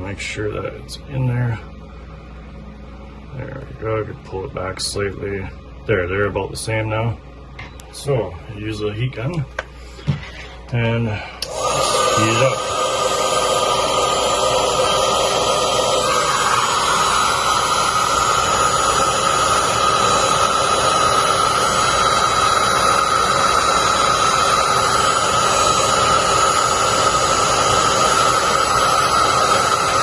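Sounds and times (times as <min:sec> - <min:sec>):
heat gun blowing air: 0:11.4 - 0:30.0.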